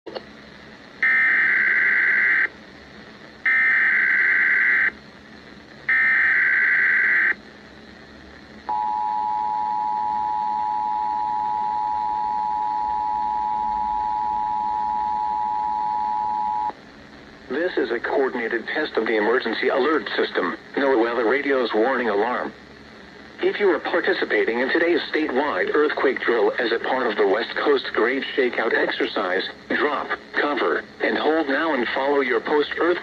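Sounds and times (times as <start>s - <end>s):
screeching data bursts: 1.0s - 2.5s, 3.4s - 5.0s, 5.8s - 7.4s.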